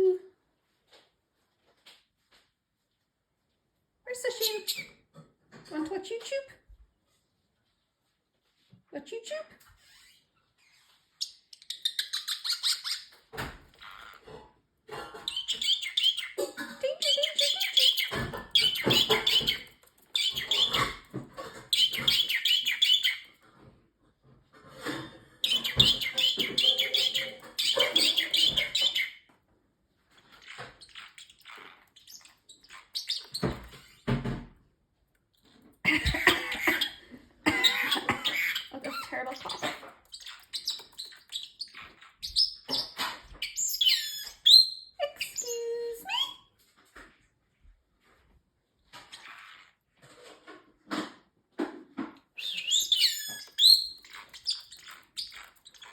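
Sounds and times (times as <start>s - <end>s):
bird chirping and chattering: 9.8s - 14.3s, 15.0s - 23.3s, 25.4s - 29.2s, 30.2s - 34.2s, 35.9s - 46.4s, 52.4s - 55.9s.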